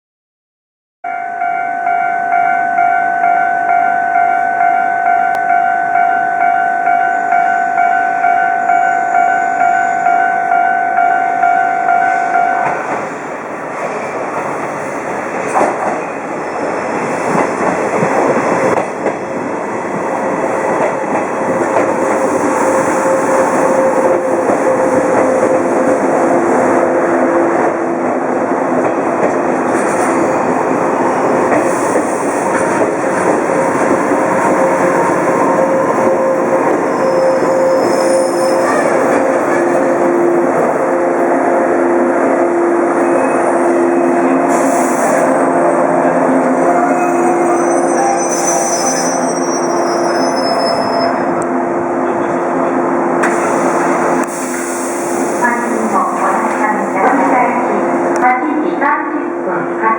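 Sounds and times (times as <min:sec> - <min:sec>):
train wheels rumbling: 0:12.2 - 0:59.9
high wheel squeal: 0:34.6 - 0:40.0, 0:43.0 - 0:45.5, 0:46.5 - 0:51.3.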